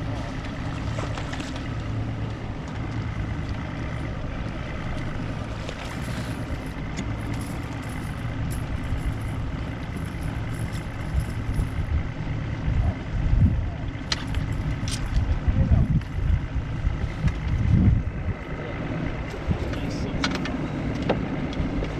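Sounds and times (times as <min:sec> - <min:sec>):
outboard motor running: 0:00.0 - 0:21.9
water noise: 0:00.0 - 0:21.9
wind noise: 0:12.8 - 0:13.8, 0:15.0 - 0:18.4.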